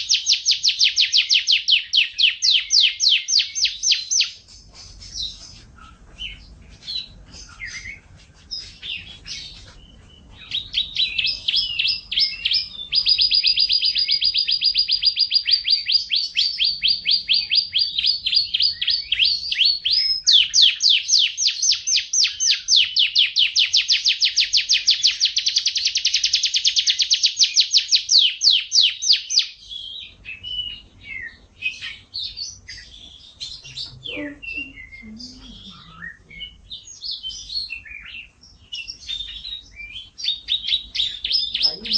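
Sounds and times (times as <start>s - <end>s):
canary chirping and trilling: 0.0s - 41.9s.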